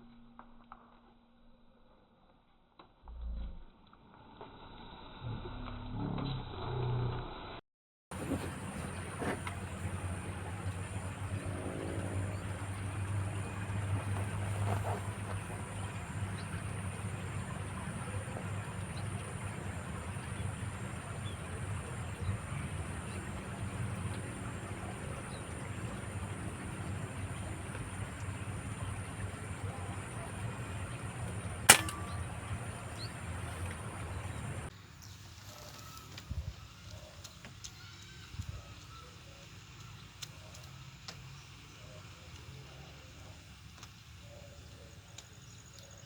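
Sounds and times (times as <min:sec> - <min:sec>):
steady low rumble: 0:08.1 - 0:34.7
sharp loud crack with ring: 0:31.6 - 0:33.1.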